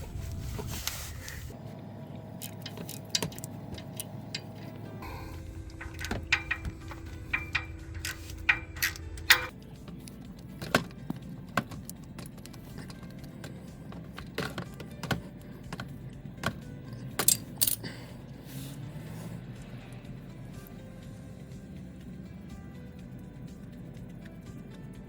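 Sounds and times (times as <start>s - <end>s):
faint music: 0.0s - 25.0s
ratchet and bolts clicking: 2.4s - 10.0s, 17.2s - 17.9s.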